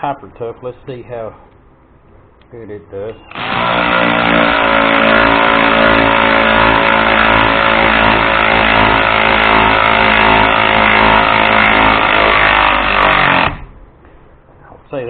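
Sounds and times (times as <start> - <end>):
electric ratchet motor whine: 3.3 - 13.8.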